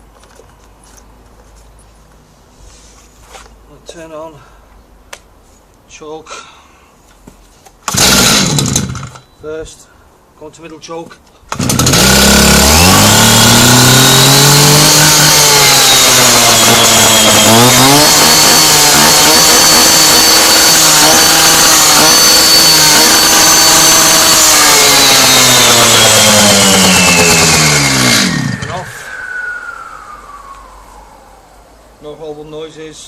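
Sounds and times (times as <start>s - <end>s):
saw engine running: 7.9s - 9.1s, 11.5s - 31.6s.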